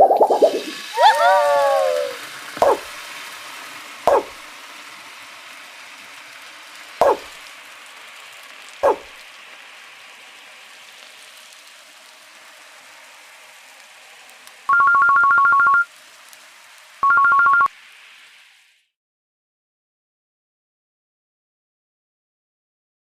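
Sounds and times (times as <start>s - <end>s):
steady hiss: 0.1s - 19.0s
telephone ringing: 14.7s - 15.9s, 17.0s - 17.7s.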